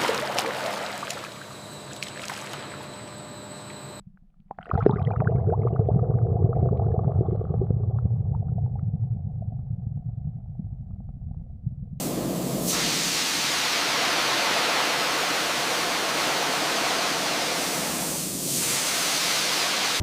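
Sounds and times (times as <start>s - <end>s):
high-pressure air jet hiss: 12.0s - 20.0s.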